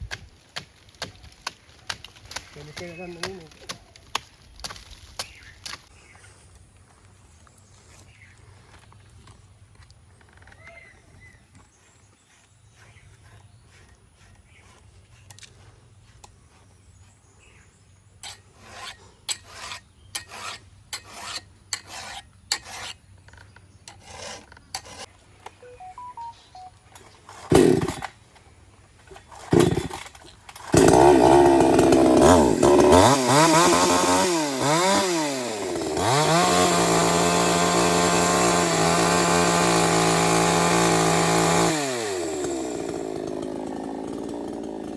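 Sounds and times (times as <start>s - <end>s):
chainsaw pull-start bursts: 27.2s - 28.2s, 29.1s - 44.9s
chainsaw engine revving: 27.3s - 28.2s, 29.1s - 44.9s.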